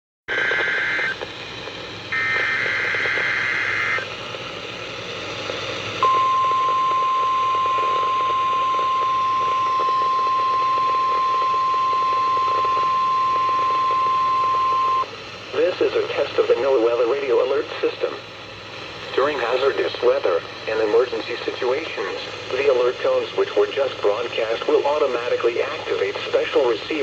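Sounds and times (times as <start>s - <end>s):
steady warning alarm tone: 0.3s - 1.3s, 2.1s - 4.1s, 6.0s - 15.1s
two-tone data bursts: 0.3s - 1.3s, 2.1s - 4.1s, 6.0s - 15.1s
radio static hiss: 0.3s - 27.0s.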